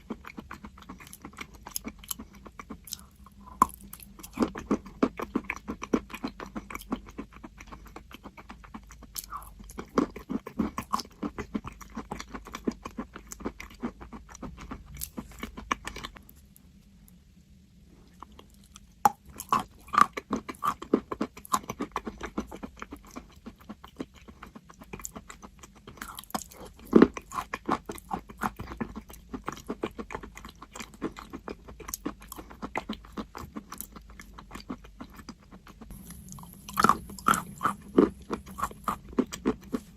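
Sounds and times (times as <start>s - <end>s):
chalk being bitten and chewed: 18.6s - 39.9s.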